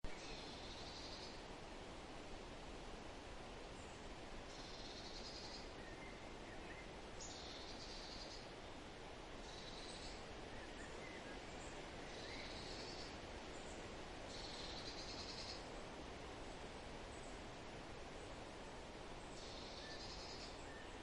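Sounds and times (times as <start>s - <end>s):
wind in trees: 0.0s - 21.0s
faint bird chirps: 0.1s - 1.4s, 3.8s - 8.5s, 9.4s - 15.7s, 19.2s - 21.0s.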